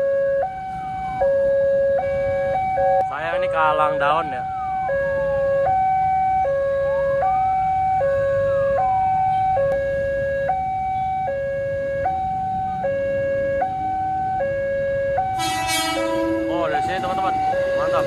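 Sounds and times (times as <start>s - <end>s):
level crossing two-tone alarm: 10.6s - 18.0s.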